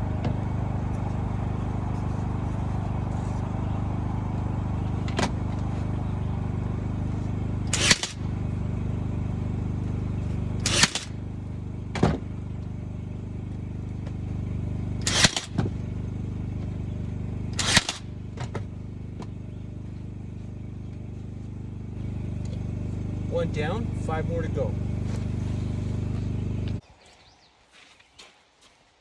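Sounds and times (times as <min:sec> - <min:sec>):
steady machine hum: 0:00.0 - 0:26.8
nail gun firing: 0:07.7 - 0:08.2, 0:10.6 - 0:11.2, 0:15.0 - 0:15.7, 0:17.6 - 0:18.1.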